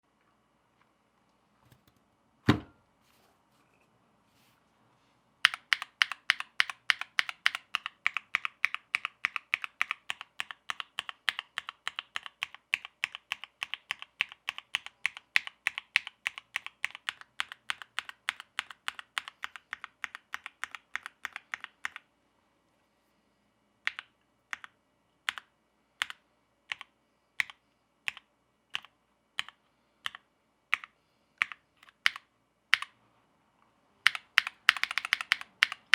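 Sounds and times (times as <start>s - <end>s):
short thump: 2.5s - 2.8s
mechanical keyboard typing: 5.4s - 22.0s, 23.9s - 32.9s, 34.0s - 35.9s.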